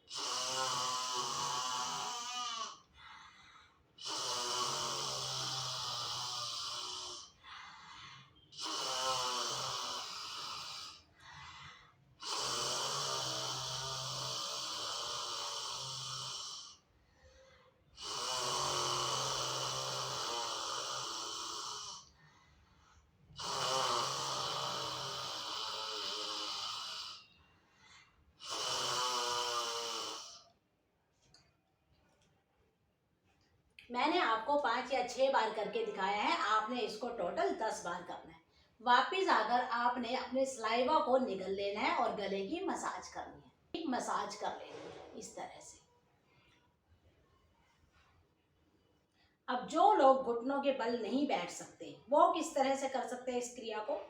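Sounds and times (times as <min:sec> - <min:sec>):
quiet in-breaths: 0:01.7 - 0:04.2, 0:05.2 - 0:09.1, 0:10.0 - 0:12.3, 0:15.4 - 0:28.6, 0:38.3 - 0:38.9, 0:44.5 - 0:49.5
forceful throaty exhalations: 0:44.1 - 0:45.8
short quiet in-breath: 0:44.6 - 0:45.5.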